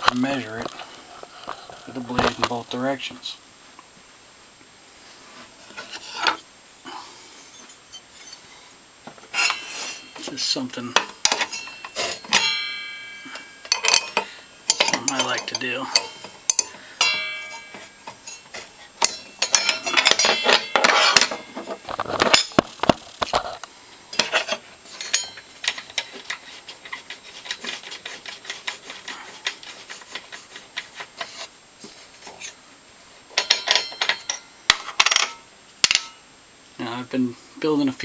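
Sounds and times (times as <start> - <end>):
metal tools clattering on saw: 10.9 - 23.6, 24.2 - 31.4, 33.4 - 35.4.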